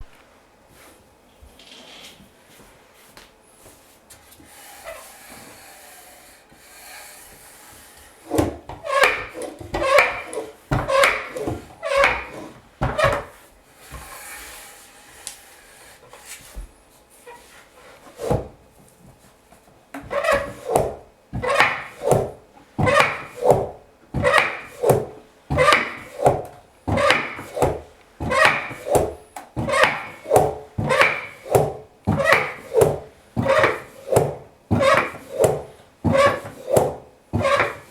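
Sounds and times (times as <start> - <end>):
wooden toy horse creaking: 4.5 - 13.3, 25.6 - 31.6, 32.2 - 37.9.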